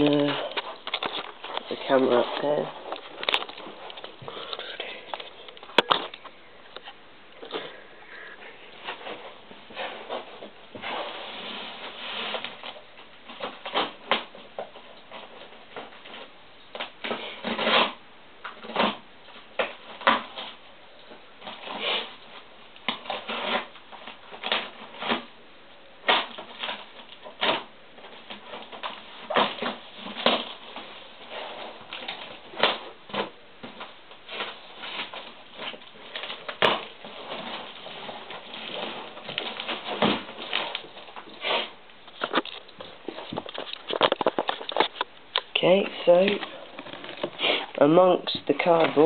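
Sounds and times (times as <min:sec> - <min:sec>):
cardboard rustling and scraping: 0:00.0 - 0:25.4, 0:26.0 - 0:49.0.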